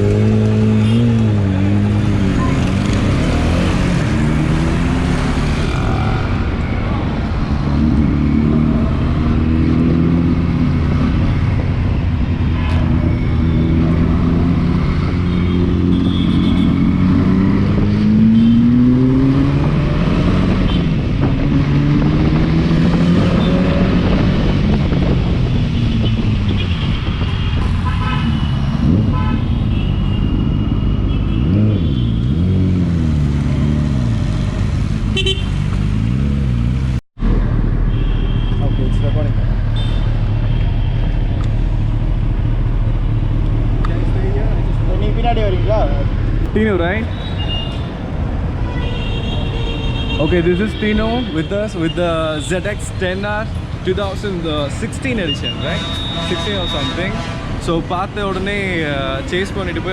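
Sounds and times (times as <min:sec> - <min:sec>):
wind and road rumble: 0:00.0 - 0:59.9
motorcycle engine accelerating: 0:13.0 - 0:26.6
vehicle horns honking: 0:15.2 - 0:16.9, 0:25.9 - 0:32.5, 0:35.1 - 0:35.7, 0:37.8 - 0:41.2, 0:47.1 - 0:47.9, 0:48.6 - 0:52.8, 0:55.0 - 0:59.9.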